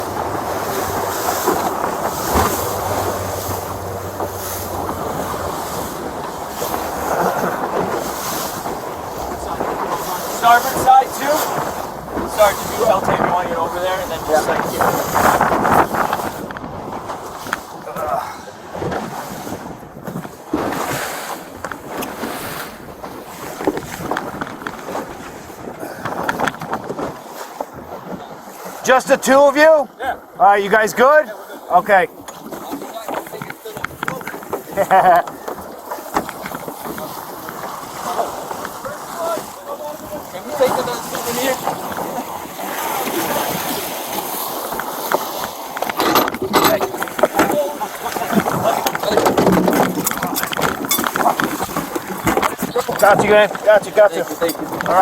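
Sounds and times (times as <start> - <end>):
wind buffeting microphone: 0.0 - 28.8, 32.0 - 55.0
motorboat engine humming: 0.0 - 55.0
rushing water: 0.0 - 55.0.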